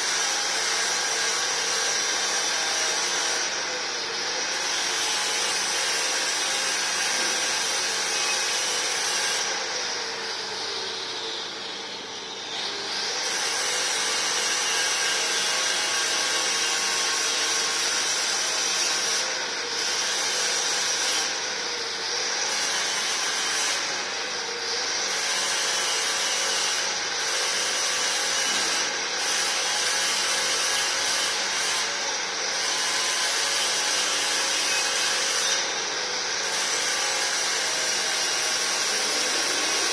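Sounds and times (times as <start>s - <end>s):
angle grinder grinding: 35.6s - 39.9s.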